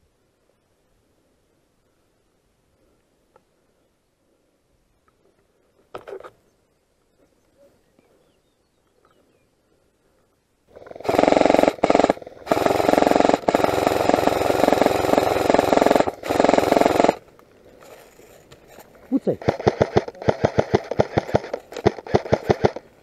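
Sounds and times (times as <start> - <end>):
airsoft gun firing bursts: 10.8 - 17.2, 19.2 - 23.0.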